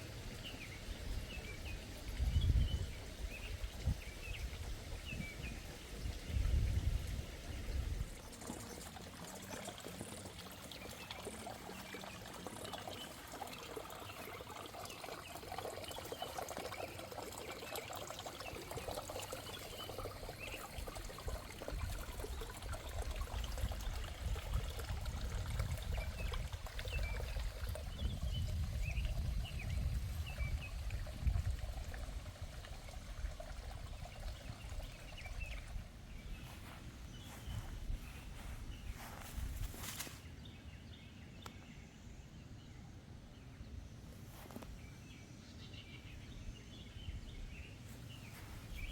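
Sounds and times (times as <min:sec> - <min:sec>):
wind rumble on microphone: 0:00.0 - 0:08.4, 0:20.3 - 0:40.2, 0:46.3 - 0:48.9
birds chirping: 0:00.0 - 0:24.8, 0:32.9 - 0:43.8, 0:44.4 - 0:48.9
water trickling: 0:00.0 - 0:40.2, 0:47.0 - 0:48.9.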